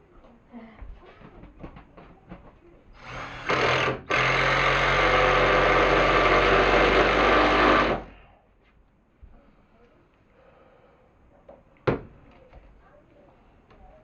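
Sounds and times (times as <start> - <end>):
impact driver driving a screw: 3.0 - 8.1.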